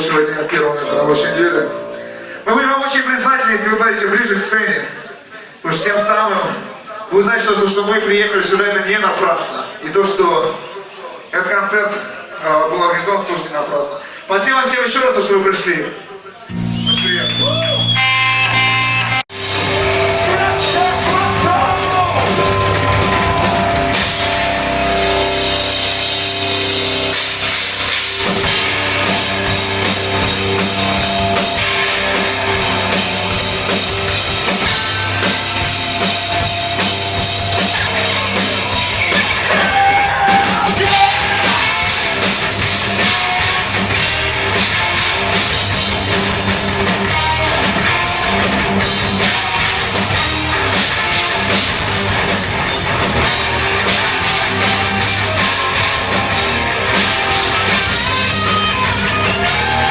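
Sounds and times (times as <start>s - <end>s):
drum kit: 16.5s - 59.9s
electric guitars: 16.5s - 59.9s.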